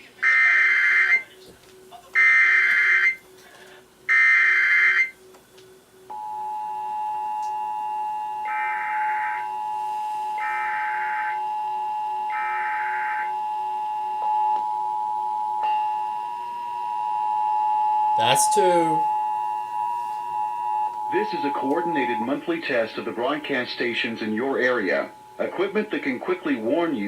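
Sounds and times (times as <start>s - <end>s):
two-tone attention signal: 6.1s - 23.7s.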